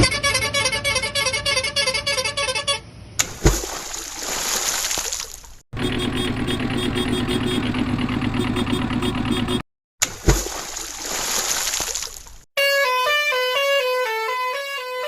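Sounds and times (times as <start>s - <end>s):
vehicle engine chugging: 5.8s - 9.6s.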